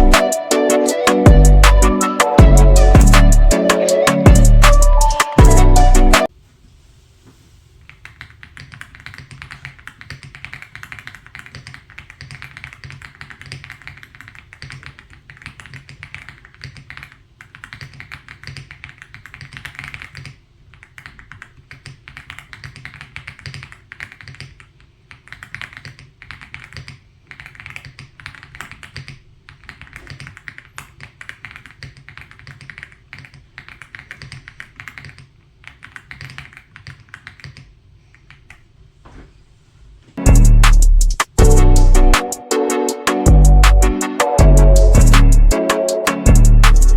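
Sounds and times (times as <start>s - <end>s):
mechanical keyboard typing: 8.1s - 37.7s.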